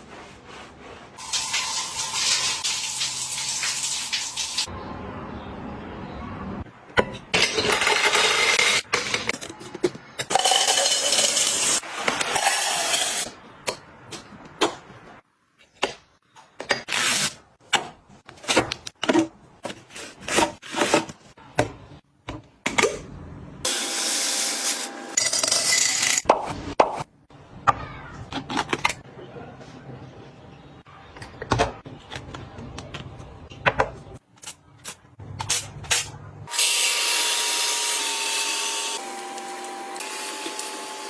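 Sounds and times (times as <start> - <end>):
rustling and scraping of objects: 0.0 - 1.2, 18.1 - 21.4.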